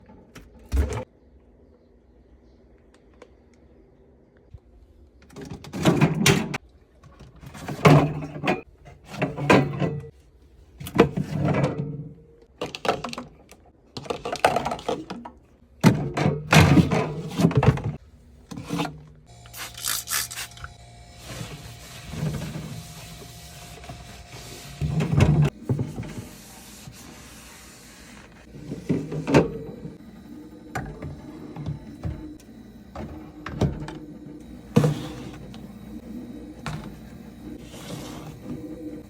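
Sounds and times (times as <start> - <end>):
objects clunking in fridge: 7.4 - 10.1.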